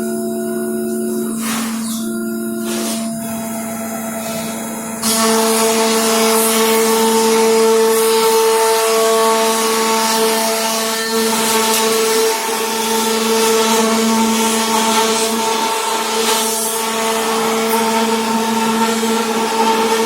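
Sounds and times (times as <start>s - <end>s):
router spindle whine: 0.0s - 20.0s
hissing wood cutting noise: 1.2s - 10.8s.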